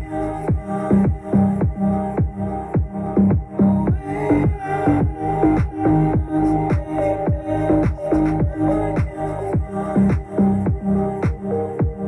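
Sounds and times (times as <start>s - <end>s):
electronic dance music on speaker: 0.0s - 12.0s.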